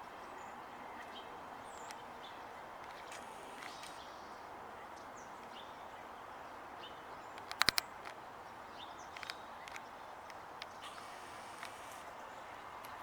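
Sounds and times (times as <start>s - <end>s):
songbird chirps: 0.0s - 13.0s
steady background hiss: 0.0s - 13.0s
sharp clicks: 7.4s - 8.2s, 9.1s - 12.2s.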